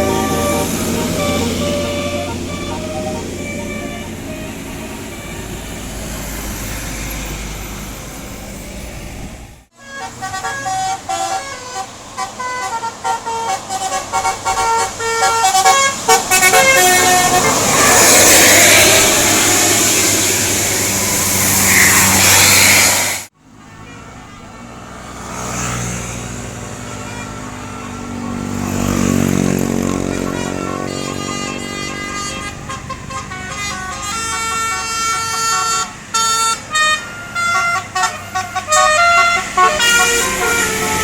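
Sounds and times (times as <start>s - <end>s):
bus horn playing a tune: 0.0s - 7.9s, 9.7s - 23.0s, 23.6s - 41.0s
loud rushing noise: 0.0s - 9.7s, 15.9s - 23.3s.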